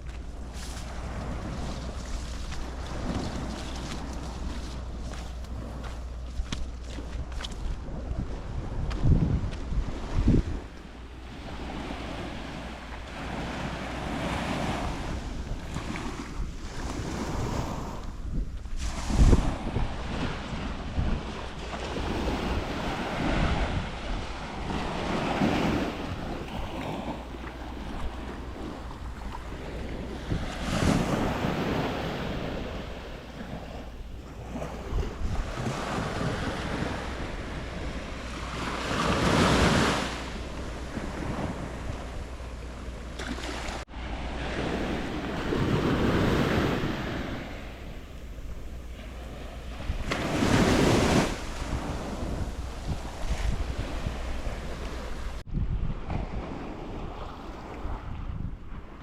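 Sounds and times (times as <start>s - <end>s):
wind rumbling on microphone: 0.0s - 59.0s
surf breaking on beach: 11.3s - 42.1s, 43.2s - 55.4s.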